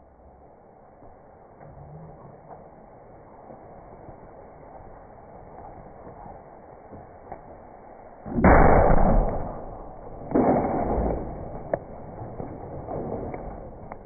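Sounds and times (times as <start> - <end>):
loud crashing impacts: 8.3 - 14.0.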